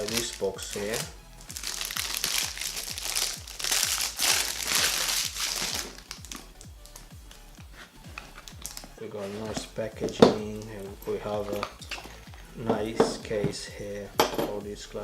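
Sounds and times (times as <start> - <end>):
packaging crinkling: 0.0 - 7.0, 8.2 - 9.6
electronic music with kick drum: 0.0 - 15.0.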